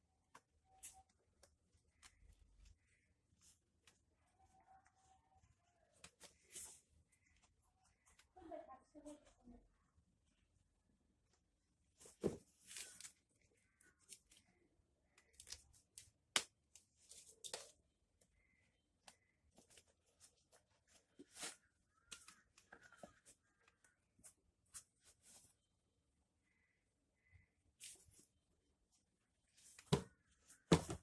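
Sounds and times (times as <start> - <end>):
handling rustles and taps: 29.7 - 31.0.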